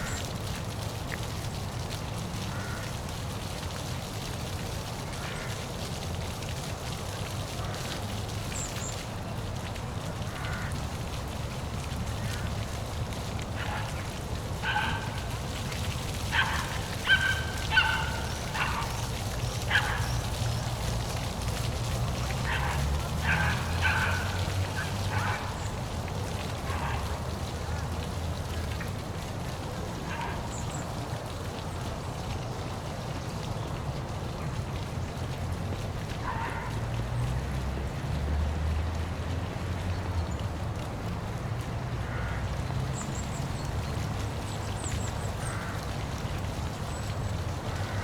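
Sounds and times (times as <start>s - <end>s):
waterfall rushing: 10.4s - 30.6s.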